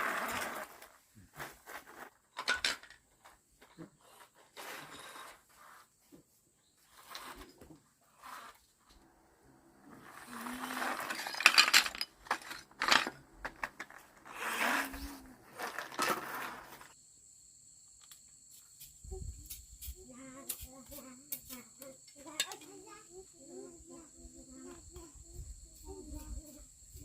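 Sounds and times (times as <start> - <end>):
rustling and clattering: 0.3 - 8.8, 10.0 - 17.0.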